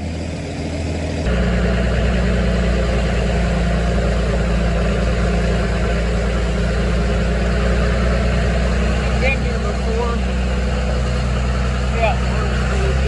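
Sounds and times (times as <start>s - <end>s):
vehicle engine running: 0.0s - 13.0s.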